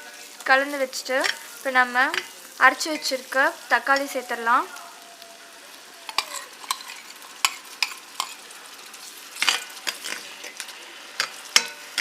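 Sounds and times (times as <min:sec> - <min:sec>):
spoon stirring and scraping: 0:00.0 - 0:04.4, 0:05.7 - 0:12.0
food sizzling in hot oil: 0:00.0 - 0:12.0
spoon knocking pan: 0:00.9 - 0:04.4, 0:06.1 - 0:08.4, 0:09.4 - 0:12.0.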